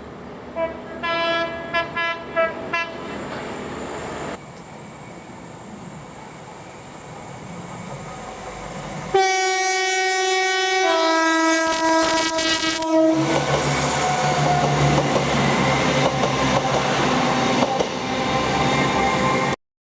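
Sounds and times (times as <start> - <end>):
train two-tone horn: 0.6 - 3.2, 9.1 - 13.4
train wheels clattering over rails: 13.2 - 19.1.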